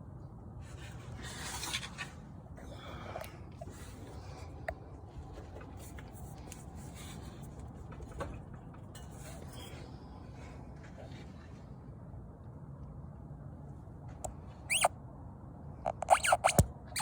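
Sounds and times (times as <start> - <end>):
suspension popping: 15.9 - 17.0.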